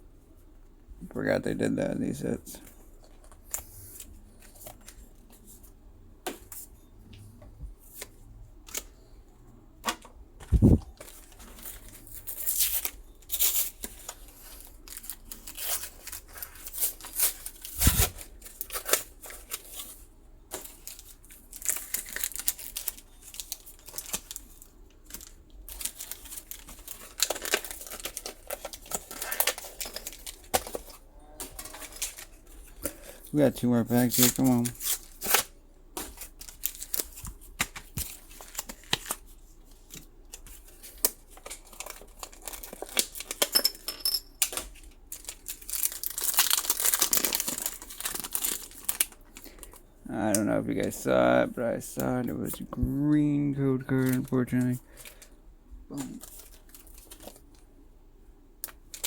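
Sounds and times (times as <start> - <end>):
foil wrapper crinkling and tearing: 10.7 - 43.5, 44.6 - 52.6, 56.0 - 57.6.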